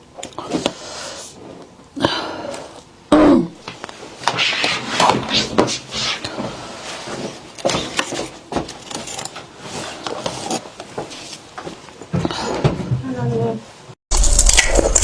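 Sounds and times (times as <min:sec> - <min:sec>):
ice being chewed: 0:14.1 - 0:15.0.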